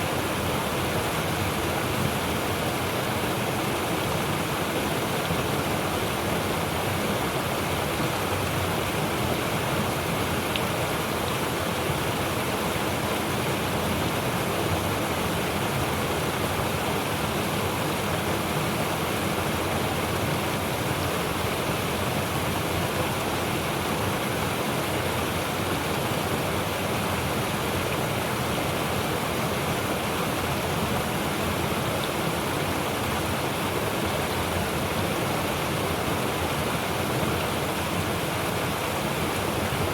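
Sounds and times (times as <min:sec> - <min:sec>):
stream rushing: 0:00.0 - 0:39.9.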